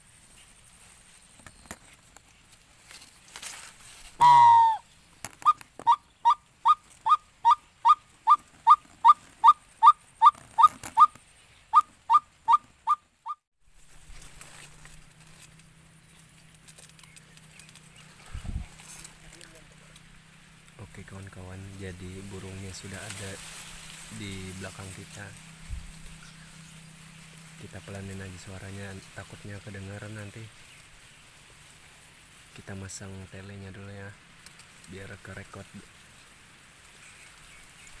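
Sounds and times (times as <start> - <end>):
blown bird call lure: 4.2 - 13.4.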